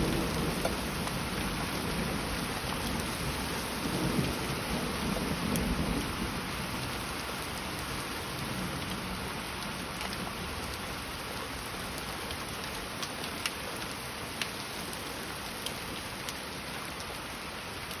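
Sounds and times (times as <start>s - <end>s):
low thunder rumble: 0.0s - 9.4s
heavy rain falling: 0.0s - 18.0s
sharp water drips: 6.7s - 18.0s.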